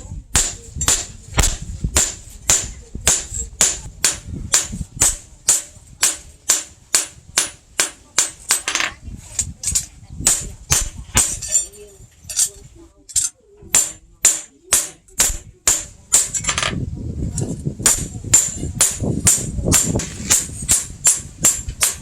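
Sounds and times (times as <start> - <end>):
hammer striking steel on anvil: 0.3 - 8.9.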